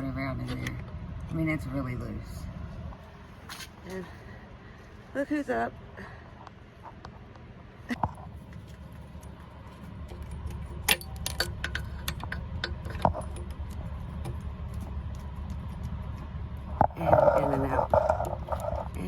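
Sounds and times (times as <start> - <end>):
steady low rumble: 0.0 - 19.0
sharp metallic clicks and rattling: 10.0 - 19.0.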